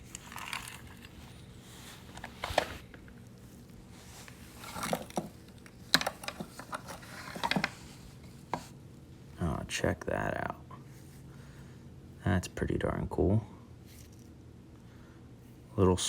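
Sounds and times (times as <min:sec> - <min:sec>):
small tools clattering in box: 0:00.0 - 0:01.4.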